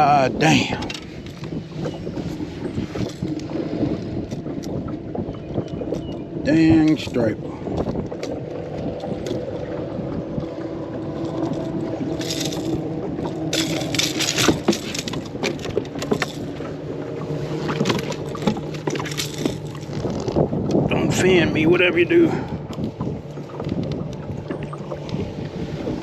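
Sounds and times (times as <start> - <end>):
knocks and clatter in boat: 0.0 - 26.0
electric trolling motor humming: 1.2 - 20.8.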